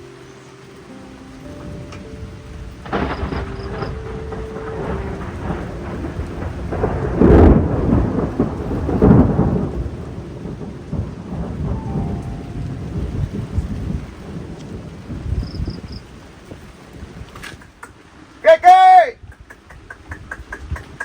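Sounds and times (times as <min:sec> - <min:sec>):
soft background music: 0:00.0 - 0:14.6
thunder rumbling: 0:00.0 - 0:17.7
steady rain: 0:00.0 - 0:21.0.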